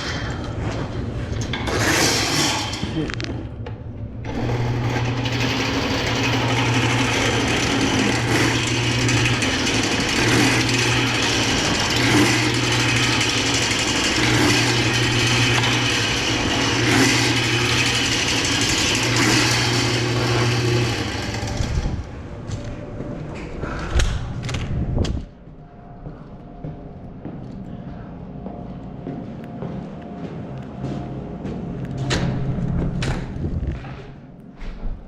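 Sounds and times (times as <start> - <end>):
electric motor humming: 4.3 - 22.2.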